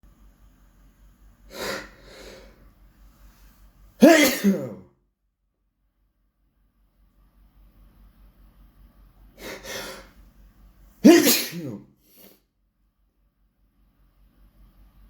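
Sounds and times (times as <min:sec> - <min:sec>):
person sneezing loudly: 0:01.5 - 0:02.5, 0:04.0 - 0:04.8, 0:09.4 - 0:10.2, 0:11.0 - 0:12.4.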